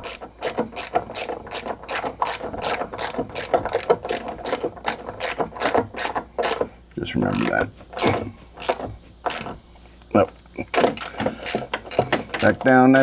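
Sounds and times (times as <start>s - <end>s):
ratchet wrench clicking: 0.0s - 6.7s, 7.3s - 9.6s, 10.8s - 13.0s.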